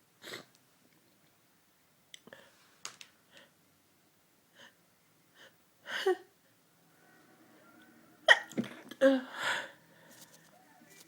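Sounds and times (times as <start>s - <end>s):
woman gasping inhale: 9.2s - 10.1s.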